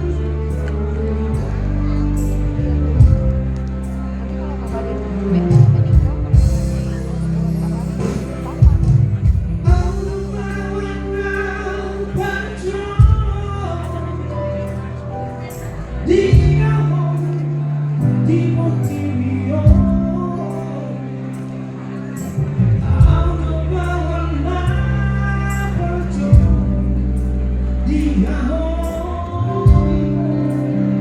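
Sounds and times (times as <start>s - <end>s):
sustained bass notes: 0.0s - 31.0s
person singing: 4.0s - 31.0s
light percussion beat: 5.5s - 10.8s.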